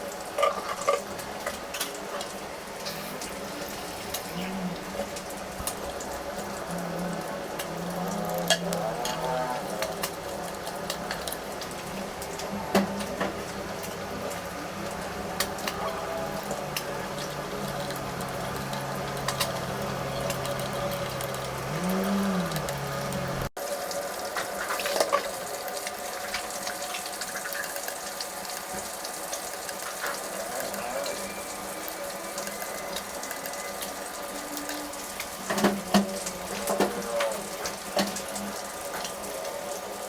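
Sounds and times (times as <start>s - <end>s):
water running and splashing: 0.0s - 40.0s.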